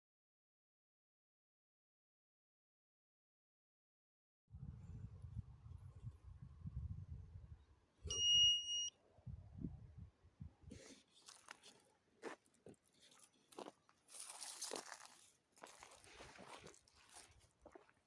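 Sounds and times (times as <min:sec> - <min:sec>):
electronic beep: 0:08.1 - 0:08.9
crunching: 0:10.8 - 0:18.0.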